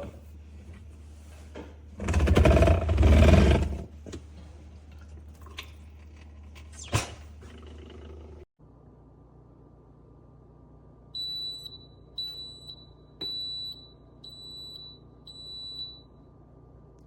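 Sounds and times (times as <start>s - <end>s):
low steady hum: 3.8s - 17.0s.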